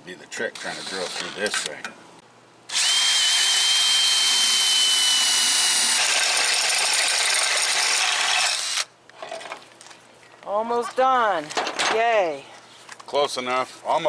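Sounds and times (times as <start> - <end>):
power drill whining: 0.6 - 1.7, 2.7 - 8.9.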